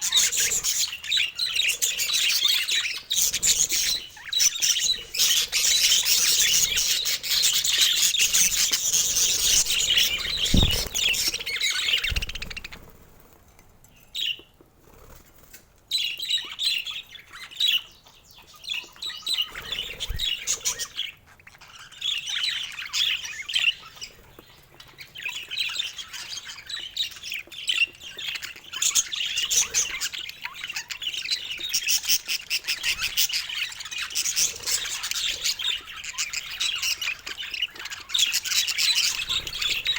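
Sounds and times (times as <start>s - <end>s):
budgerigar chirping and squawking: 0.0s - 12.9s.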